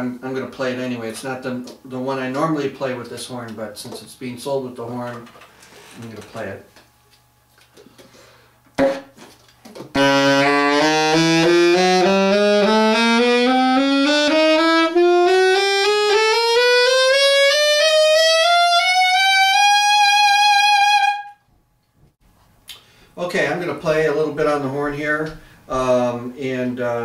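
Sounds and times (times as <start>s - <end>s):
alto saxophone ascending scale: 9.9s - 21.4s.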